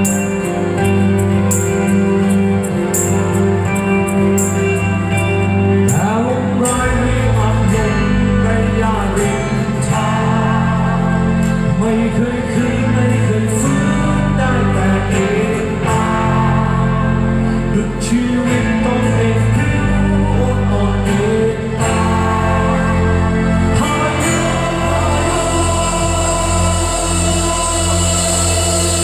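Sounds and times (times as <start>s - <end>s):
live rock band playing: 0.0s - 29.0s
male lead singer: 0.0s - 29.0s.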